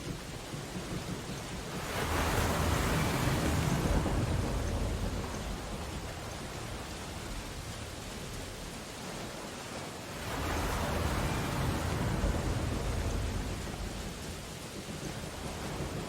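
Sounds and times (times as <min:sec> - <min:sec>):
rain on window glass: 0:00.0 - 0:16.0
ocean wave crashing: 0:10.2 - 0:14.5.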